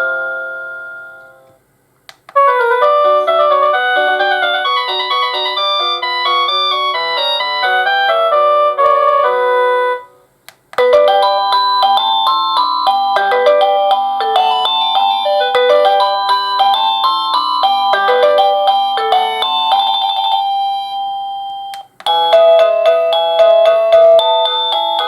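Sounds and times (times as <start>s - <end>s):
electronic doorbell chime tune: 0.0s - 1.4s, 2.8s - 9.9s, 10.8s - 25.0s.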